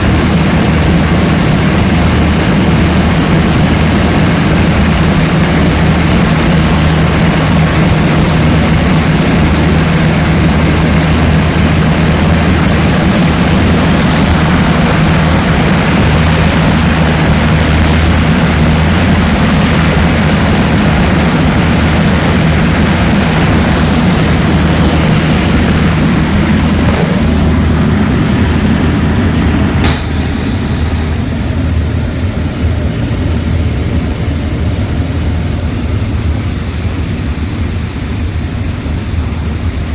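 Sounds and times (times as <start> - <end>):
rush of air: 0.0 - 34.4
propeller aircraft engine running: 0.0 - 39.9.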